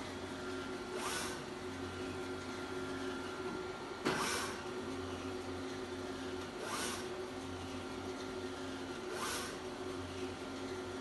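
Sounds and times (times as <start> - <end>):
printer humming: 0.0 - 11.0
printer mechanism whirring: 0.0 - 11.0.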